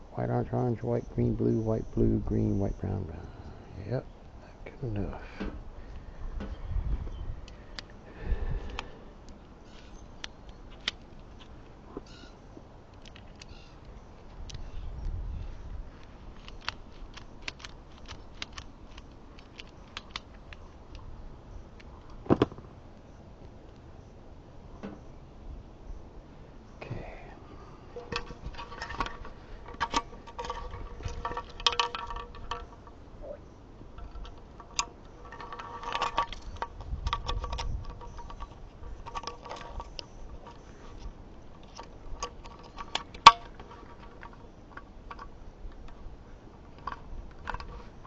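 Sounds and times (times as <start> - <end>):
tools clicking and clinking: 28.0 - 33.0, 34.0 - 46.0.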